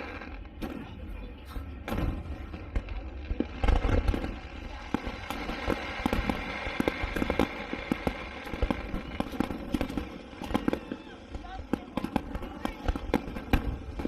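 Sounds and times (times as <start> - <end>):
firework deep boom: 0.0 - 14.0
fireworks crackling: 0.0 - 14.0.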